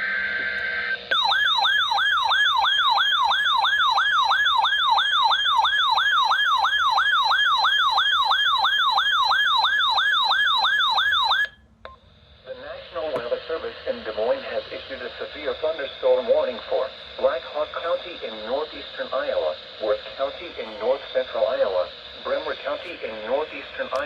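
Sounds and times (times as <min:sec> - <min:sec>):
electronic siren tone: 0:00.0 - 0:11.6.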